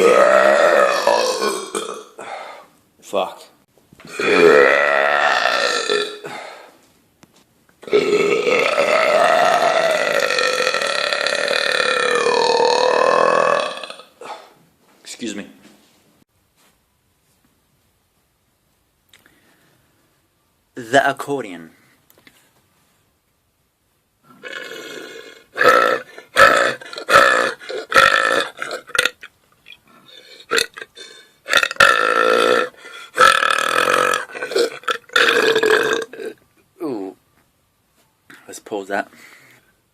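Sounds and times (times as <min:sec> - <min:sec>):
man belching: 0:00.0 - 0:02.3, 0:04.1 - 0:06.4, 0:07.8 - 0:14.2, 0:24.4 - 0:29.3, 0:30.4 - 0:37.2
man burping: 0:00.0 - 0:02.4, 0:04.1 - 0:06.5, 0:07.8 - 0:14.4, 0:24.3 - 0:29.3, 0:30.4 - 0:37.1.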